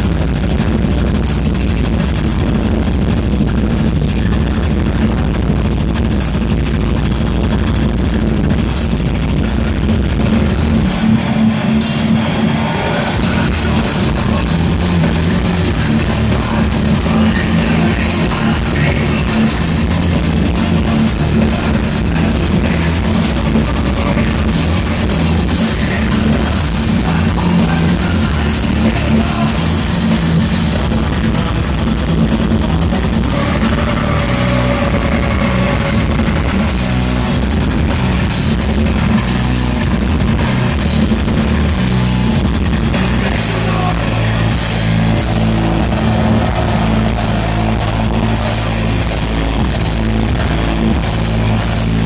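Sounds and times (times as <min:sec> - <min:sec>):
distorted electric guitars: 0:00.0 - 0:52.0
drums: 0:00.0 - 0:52.0
person singing: 0:13.1 - 0:30.1, 0:33.1 - 0:36.8, 0:43.1 - 0:45.0.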